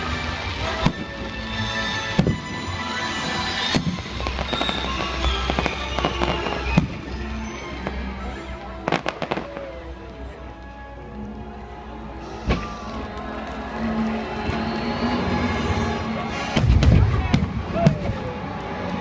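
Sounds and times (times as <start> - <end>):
fireworks crackling: 0.0 - 19.0
music playing: 0.0 - 19.0
fireworks bangs: 0.2 - 7.2, 8.8 - 9.8, 12.2 - 13.7, 14.4 - 18.8.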